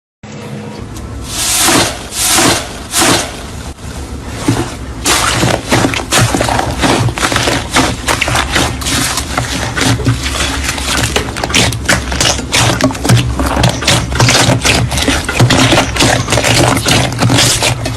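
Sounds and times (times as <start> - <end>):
slime squishing: 4.4 - 17.9.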